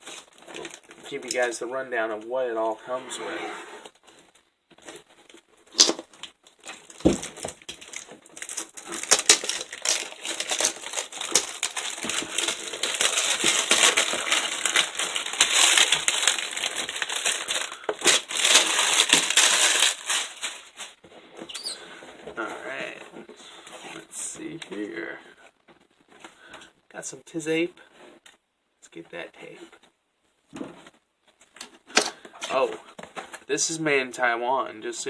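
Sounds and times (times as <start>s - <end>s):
packaging crinkling: 0.0s - 1.5s, 4.0s - 21.8s.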